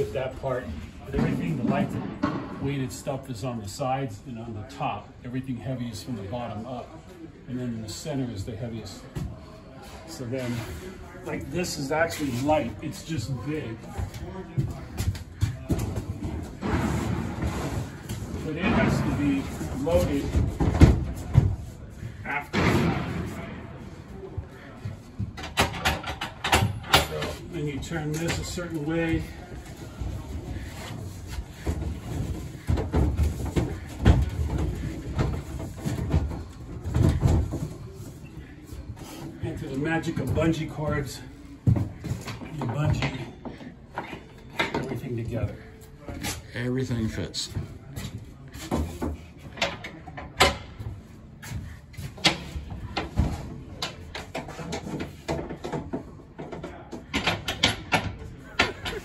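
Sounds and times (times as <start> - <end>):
hard objects knocking and clicking: 25.3 - 27.4.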